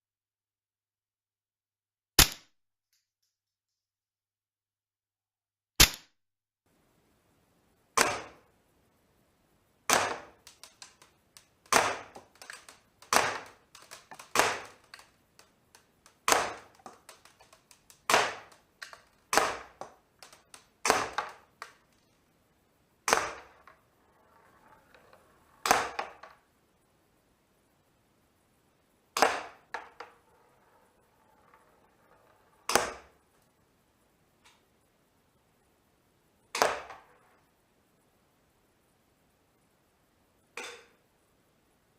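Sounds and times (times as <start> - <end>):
airsoft pistol shots: 2.2 - 2.5, 5.8 - 6.1, 8.0 - 8.4, 9.9 - 10.8, 11.7 - 15.0, 16.2 - 17.3, 18.0 - 21.5, 23.0 - 23.6, 29.2 - 29.6.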